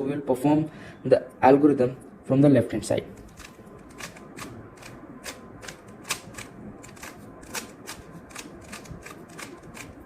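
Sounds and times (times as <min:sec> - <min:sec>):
puzzle cube plastic clicks: 0:03.2 - 0:10.0.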